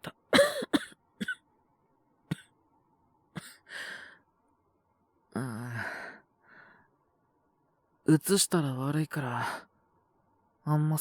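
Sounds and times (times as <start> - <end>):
man sighing and breathing: 5.4 - 6.2.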